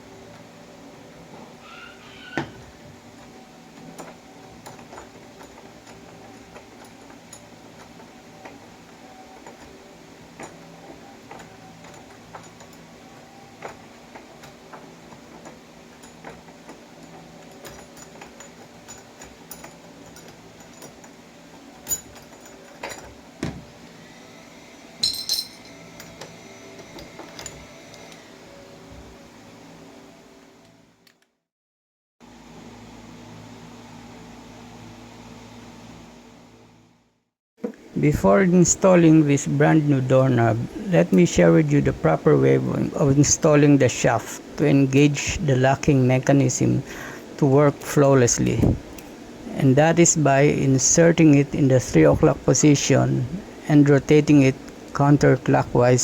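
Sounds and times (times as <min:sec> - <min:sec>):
metal parts clicking and clinking: 0:10.4 - 0:21.2, 0:21.8 - 0:23.2, 0:25.0 - 0:26.2
ringing metallic clink: 0:25.0 - 0:25.8.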